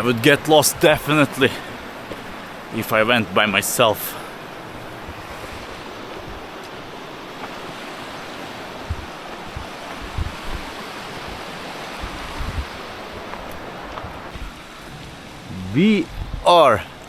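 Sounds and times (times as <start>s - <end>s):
waterfall and stream rushing: 0.0s - 17.0s
wind buffeting microphone: 4.3s - 17.0s.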